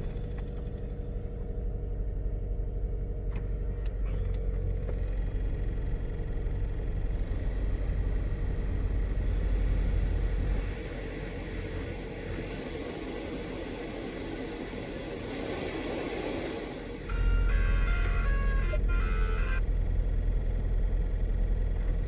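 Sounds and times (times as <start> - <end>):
fans droning: 7.9 - 22.0.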